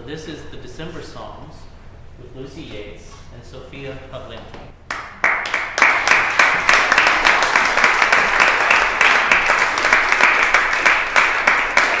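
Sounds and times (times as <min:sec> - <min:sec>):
audience applauding: 0:04.9 - 0:12.0.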